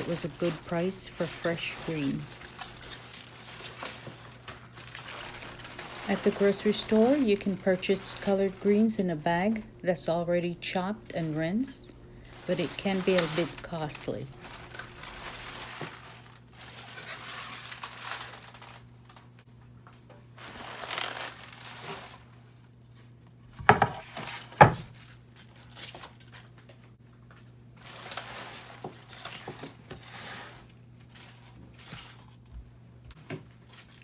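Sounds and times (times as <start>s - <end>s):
leafy greens rustling: 0.0s - 19.4s, 20.4s - 22.4s, 27.8s - 32.4s
steady low hum: 5.4s - 15.6s.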